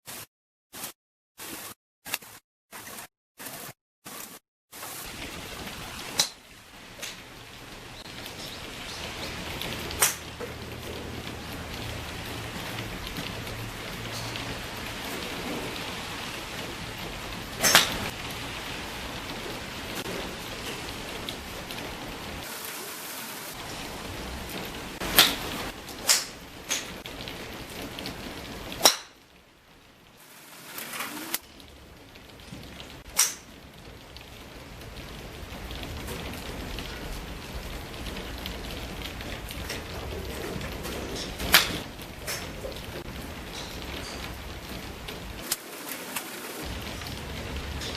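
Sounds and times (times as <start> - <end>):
steady hiss: 4.8 - 29.1
golf clubs striking balls: 5.1 - 18.2, 24.5 - 27.0, 28.7 - 29.2, 33.0 - 33.5, 39.6 - 44.5.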